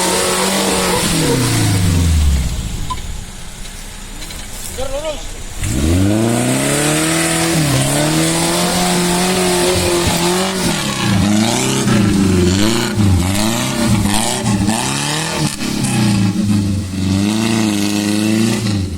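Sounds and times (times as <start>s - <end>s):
car engine revving hard: 0.0s - 18.9s.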